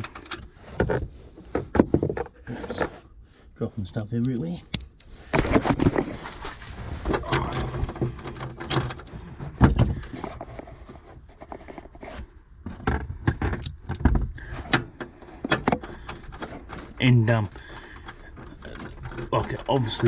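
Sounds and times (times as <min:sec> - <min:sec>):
metal tools clinking and rattling: 0:07.1 - 0:10.4.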